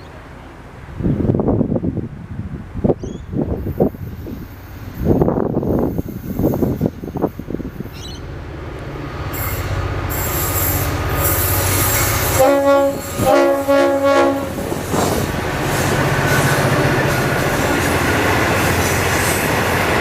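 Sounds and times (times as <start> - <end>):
diesel locomotive engine drone: 0.0 - 20.0
hissing wheel and rail noise: 3.4 - 20.0
multi-tone horn blasts: 10.5 - 15.1.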